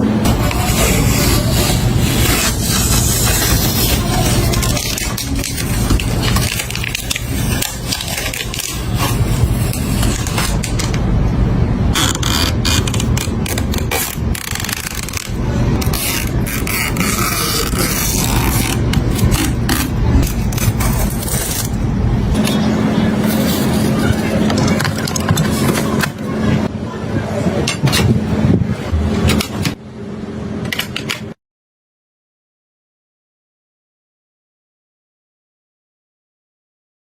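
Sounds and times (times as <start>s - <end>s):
steady low rumble: 0.0s - 30.6s
hands handling computer parts: 23.4s - 26.2s.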